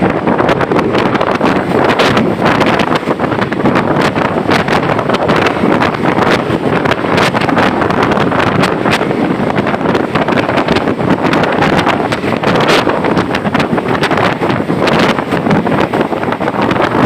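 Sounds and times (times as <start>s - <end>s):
bus road noise: 0.0s - 17.0s
rain tapping: 0.0s - 17.0s
wind on microphone: 0.0s - 17.0s.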